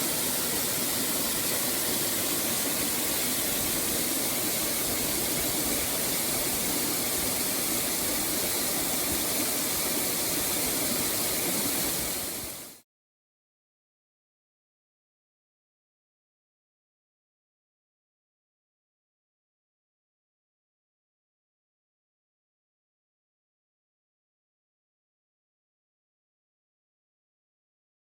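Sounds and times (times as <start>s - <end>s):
waterfall rushing: 0.0s - 12.8s.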